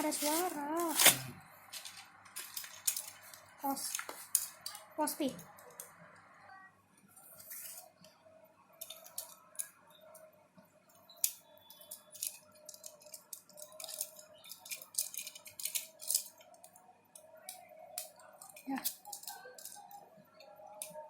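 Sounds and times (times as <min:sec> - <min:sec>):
packaging crinkling and snipping: 0:00.0 - 0:04.8, 0:11.8 - 0:16.4.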